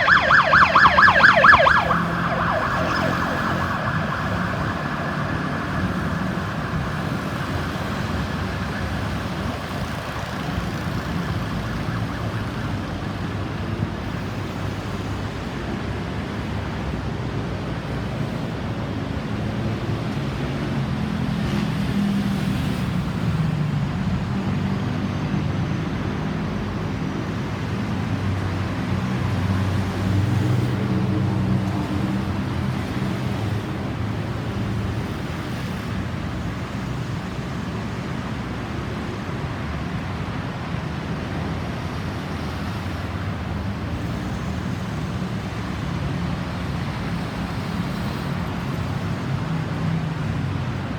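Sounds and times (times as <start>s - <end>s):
heavy engine hum: 0.0s - 11.0s
emergency vehicle siren: 0.0s - 50.9s
vehicles passing: 0.0s - 50.9s.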